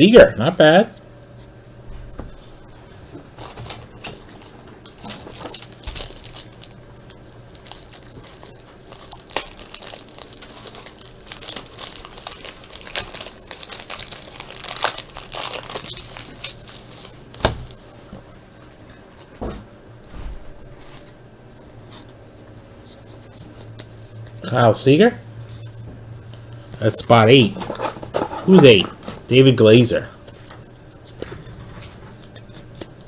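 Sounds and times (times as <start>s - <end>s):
foil wrappers crinkling and tearing: 2.8s - 17.9s, 26.8s - 33.0s.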